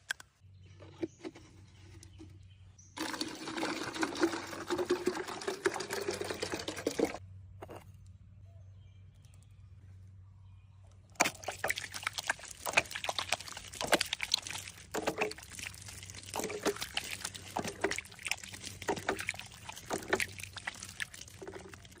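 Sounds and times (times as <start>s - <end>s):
water splashing and pouring: 3.0s - 7.2s, 11.2s - 22.0s.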